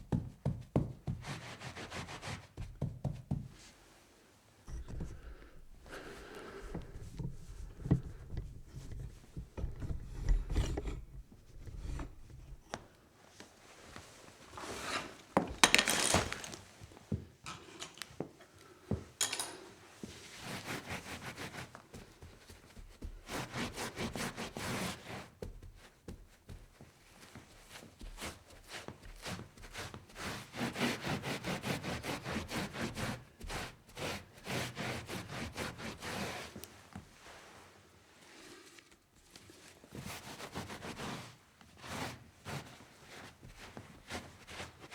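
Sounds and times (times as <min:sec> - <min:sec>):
thumps and knocks of handling: 0:00.0 - 0:01.3, 0:02.6 - 0:03.7, 0:04.6 - 0:13.0, 0:15.4 - 0:19.6
wiping on a hard surface: 0:00.2 - 0:15.8, 0:19.9 - 0:44.9
clicks and scrapes: 0:04.7 - 0:12.9, 0:14.6 - 0:16.7.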